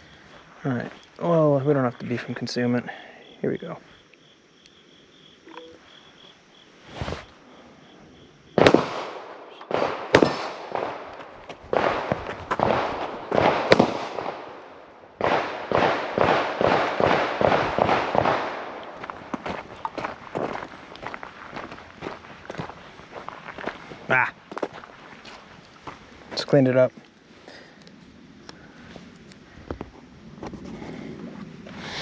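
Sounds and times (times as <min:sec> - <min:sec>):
pistol shots: 0:08.6 - 0:14.6, 0:15.2 - 0:19.0.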